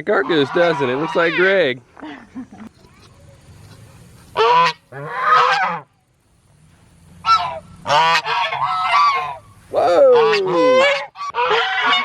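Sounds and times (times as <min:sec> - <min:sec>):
geese honking: 0:00.0 - 0:01.7, 0:03.3 - 0:06.0, 0:07.1 - 0:12.0.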